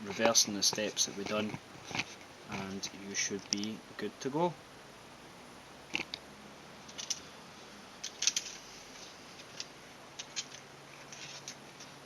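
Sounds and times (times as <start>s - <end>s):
small laptop parts clicking: 8.0s - 8.6s.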